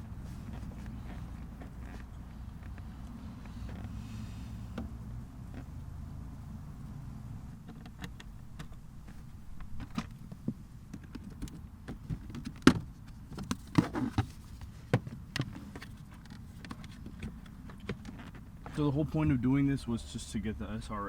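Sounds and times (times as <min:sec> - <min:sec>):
clicks and knocks of tools and plastic: 0:07.6 - 0:18.8.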